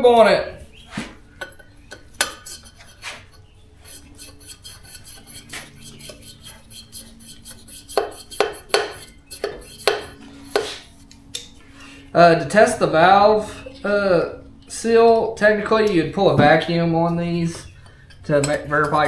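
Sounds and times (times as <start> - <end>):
metal valves clicking and tapping: 1.3 - 11.6, 17.5 - 19.0.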